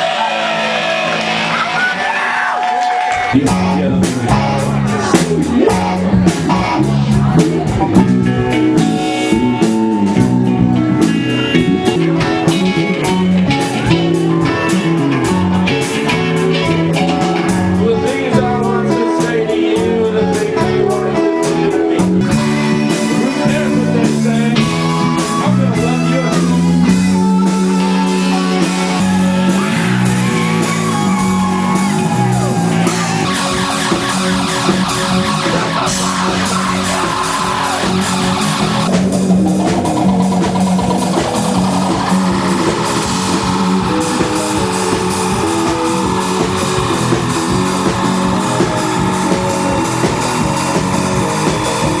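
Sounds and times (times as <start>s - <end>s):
bass guitar: 0.0s - 2.2s, 3.1s - 52.0s
electric guitar: 2.9s - 52.0s
person singing: 3.3s - 38.9s
drums with steady beat: 3.3s - 52.0s.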